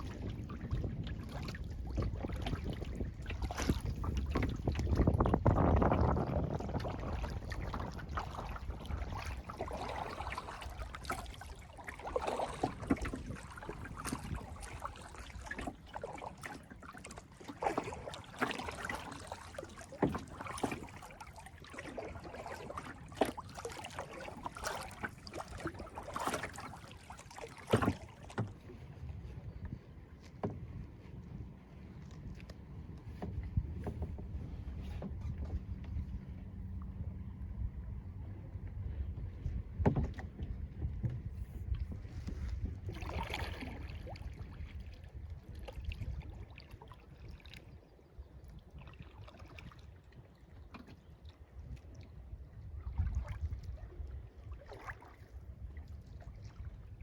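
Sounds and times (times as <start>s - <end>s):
rush of water: 0.0s - 28.8s
paddle splashing in water: 0.0s - 37.2s, 38.9s - 57.0s.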